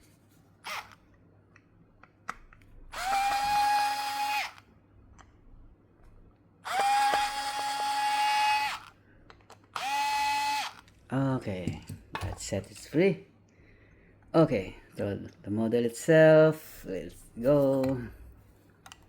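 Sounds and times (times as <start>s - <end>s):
electric screwdriver whining: 0.6s - 1.0s, 2.9s - 4.6s, 6.6s - 8.9s, 9.7s - 10.8s.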